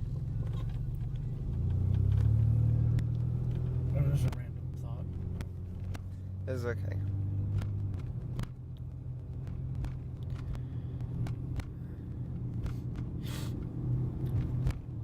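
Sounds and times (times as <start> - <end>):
car engine and road rumble: 0.0 - 15.0
short hiss: 13.2 - 13.6.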